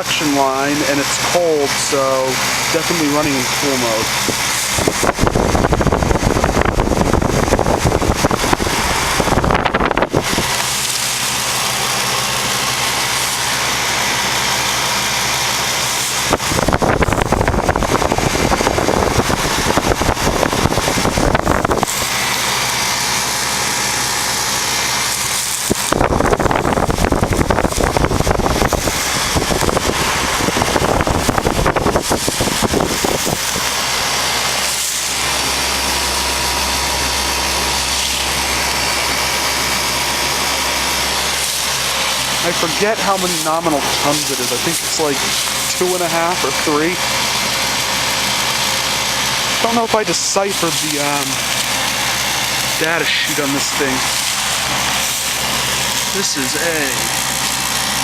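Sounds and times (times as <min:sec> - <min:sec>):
compressor humming: 0:00.0 - 0:58.0
condenser fan rushing: 0:00.0 - 0:58.0
wind buffeting microphone: 0:04.3 - 0:10.6, 0:16.3 - 0:22.0, 0:25.7 - 0:33.7.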